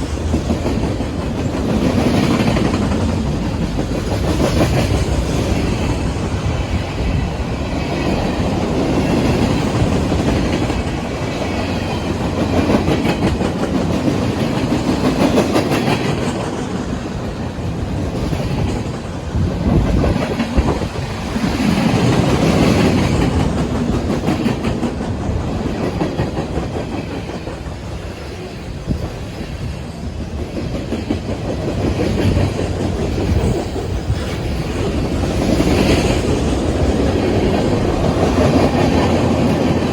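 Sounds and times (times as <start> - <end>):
freight train rolling past: 0.0 - 39.9
steel wheels clattering over rail joints: 0.0 - 39.9.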